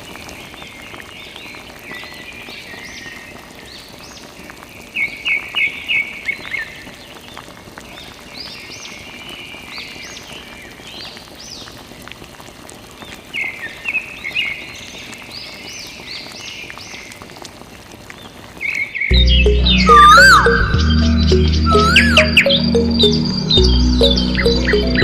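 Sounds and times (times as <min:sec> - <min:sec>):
high chirping animal calls: 0:19.2 - 0:25.0.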